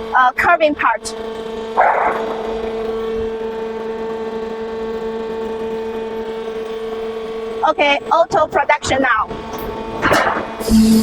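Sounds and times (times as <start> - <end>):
machine electric hum: 0.0 - 11.0
high steady pump tone: 9.5 - 11.0.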